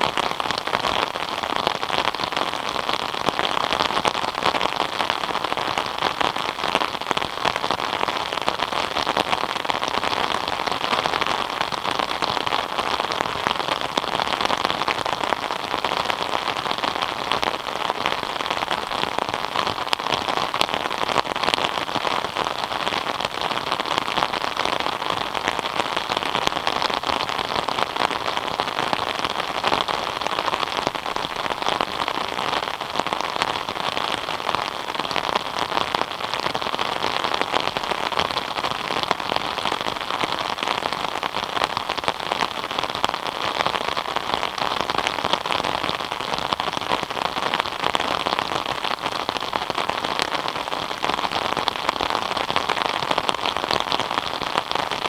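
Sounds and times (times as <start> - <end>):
rain pattering: 0.0 - 55.0.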